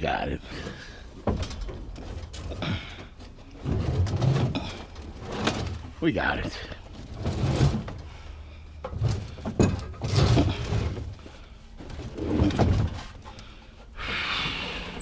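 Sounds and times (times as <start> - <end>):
heavy metal scrap dragged: 7.0 - 8.3, 10.0 - 11.2.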